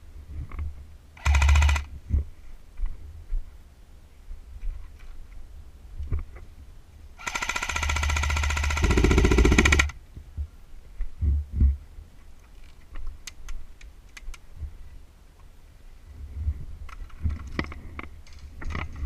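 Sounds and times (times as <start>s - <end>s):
airsoft gun full-auto burst: 1.2s - 1.9s, 7.2s - 10.0s.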